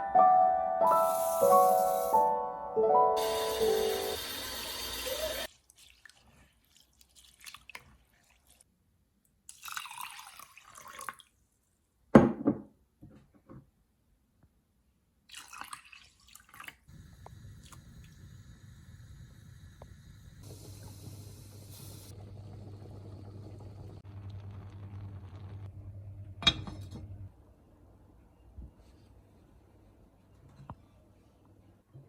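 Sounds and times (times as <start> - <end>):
water splashing and dripping: 4.8 - 8.7, 9.5 - 11.3, 15.3 - 18.2.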